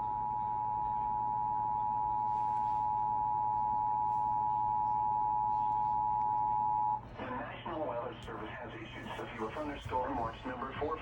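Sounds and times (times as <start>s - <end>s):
two-tone alarm signal: 0.0s - 7.0s.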